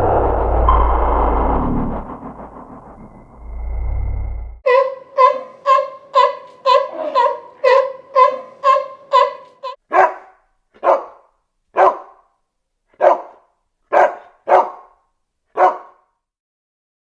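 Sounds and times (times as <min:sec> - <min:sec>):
dog barking: 0:04.7 - 0:12.2, 0:13.0 - 0:15.0, 0:15.6 - 0:16.0.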